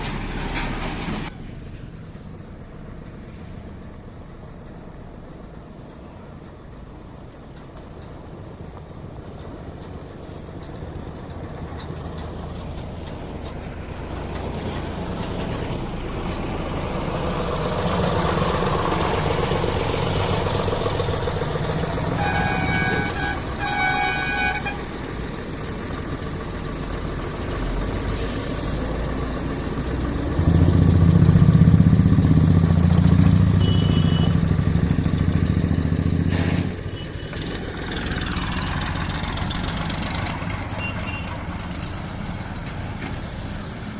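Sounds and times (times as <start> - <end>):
diesel traffic passing: 0.0 - 43.9
low engine rumble: 0.0 - 43.9
horn honking: 21.8 - 25.1, 33.4 - 34.6, 40.7 - 41.4.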